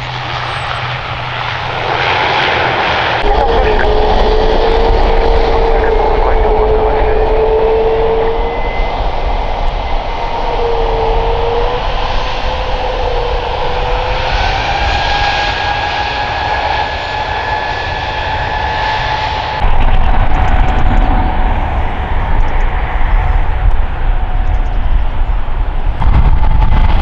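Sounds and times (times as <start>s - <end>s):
jet engines whining: 0.1s - 11.4s, 19.6s - 26.1s
deep engine rumble: 3.2s - 9.6s, 19.6s - 27.0s.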